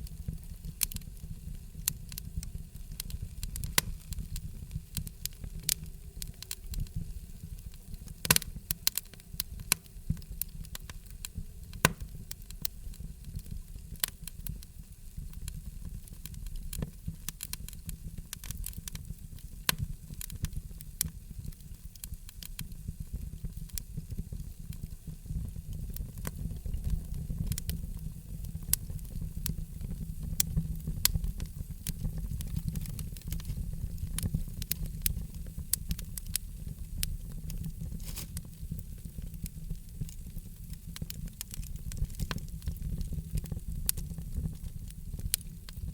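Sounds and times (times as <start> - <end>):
wood fire crackling: 0.0 - 45.9.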